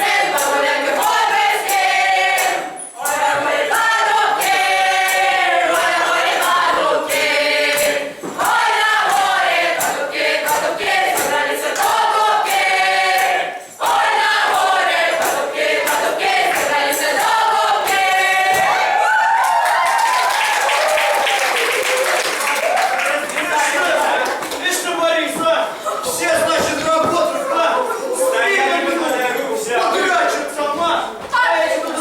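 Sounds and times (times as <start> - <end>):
group singing unaccompanied: 0.0 - 19.8, 23.7 - 32.0
people clapping: 6.2 - 25.2.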